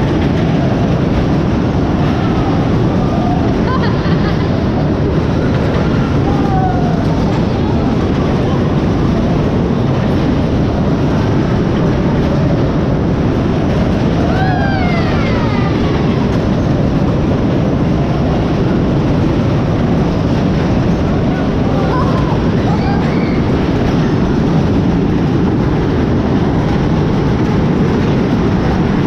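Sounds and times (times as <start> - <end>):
rumble of ride wheels: 0.0 - 29.0.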